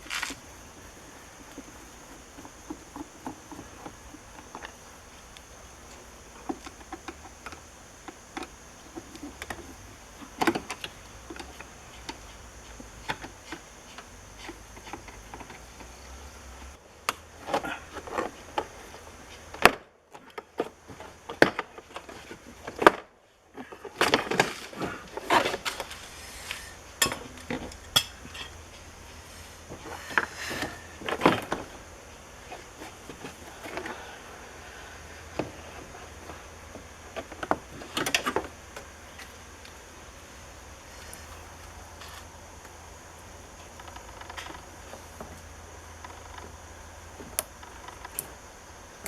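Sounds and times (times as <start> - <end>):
small hard parts clicking and knocking: 0.0 - 16.0.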